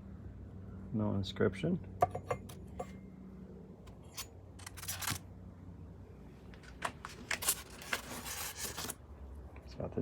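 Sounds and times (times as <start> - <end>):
steady low hum: 0.0 - 10.0
metal parts clicking and clinking: 4.0 - 5.2, 7.3 - 8.9.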